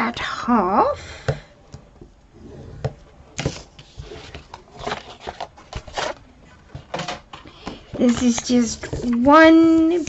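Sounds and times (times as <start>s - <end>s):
paper rustling: 3.4s - 10.0s.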